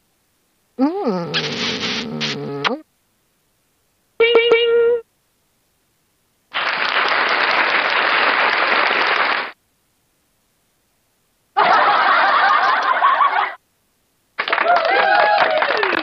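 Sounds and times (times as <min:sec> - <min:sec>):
canned applause: 0:06.5 - 0:09.6, 0:14.4 - 0:16.0.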